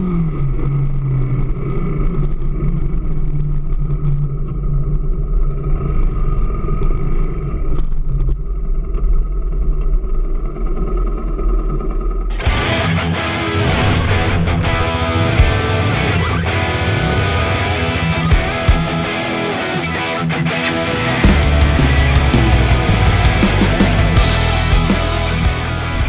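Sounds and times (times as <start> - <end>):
motorcycle engine running: 12.3 - 26.0.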